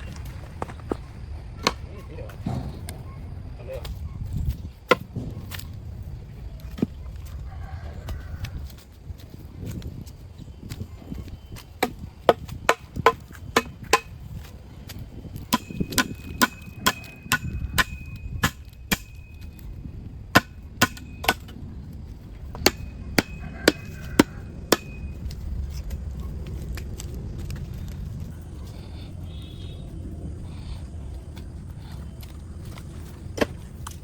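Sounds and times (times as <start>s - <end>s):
hand tool chopping wood: 4.9s - 5.6s, 11.8s - 14.1s, 15.4s - 19.4s, 20.3s - 21.5s, 22.5s - 25.2s.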